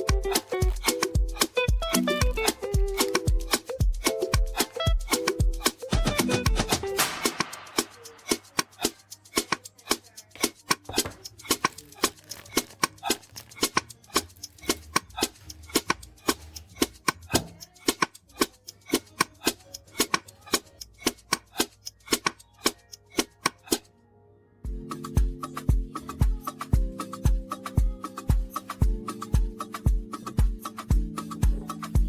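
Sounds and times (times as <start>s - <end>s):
knife chopping on cutting board: 10.4s - 11.7s.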